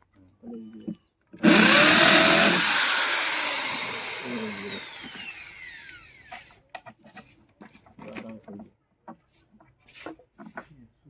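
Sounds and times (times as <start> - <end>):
power tool motor winding down: 1.4 - 6.3.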